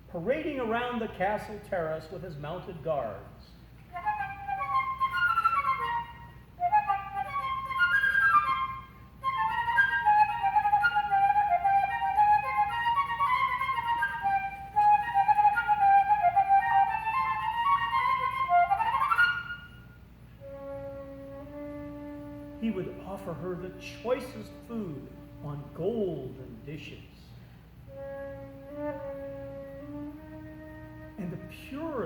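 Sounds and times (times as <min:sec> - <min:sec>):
solo flute fast runs: 0:03.9 - 0:25.4.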